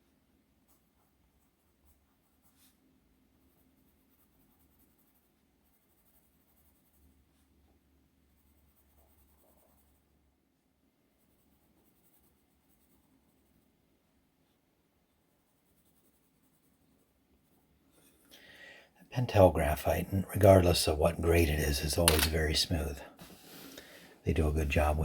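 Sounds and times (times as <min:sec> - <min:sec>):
pencil scratching on paper: 0:00.6 - 0:10.3, 0:11.1 - 0:13.8, 0:15.1 - 0:18.2.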